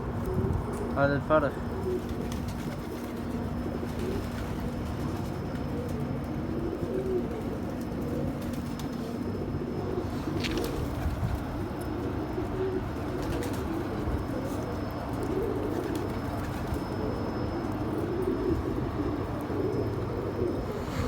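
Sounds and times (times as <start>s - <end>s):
pigeons cooing: 0.0s - 21.0s.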